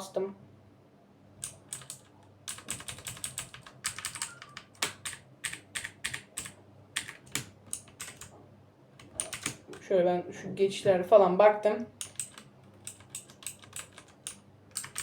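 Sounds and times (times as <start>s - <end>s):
mechanical keyboard typing: 1.4s - 8.3s, 9.0s - 9.8s, 12.0s - 15.0s.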